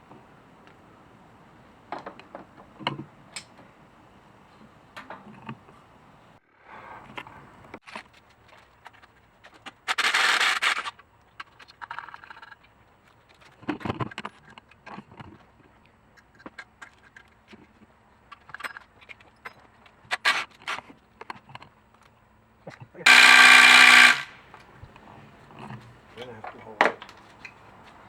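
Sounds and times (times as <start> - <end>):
scraping and clicks of brake parts: 0.0 - 6.3
loud hiss: 23.1 - 24.4.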